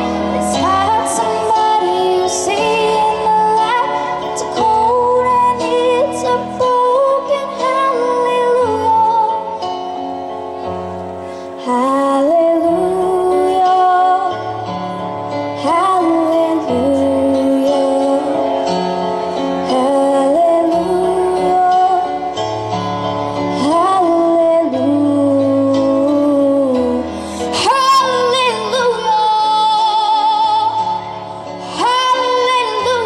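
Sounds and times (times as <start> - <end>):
young woman singing a ballad: 0.0 - 33.0.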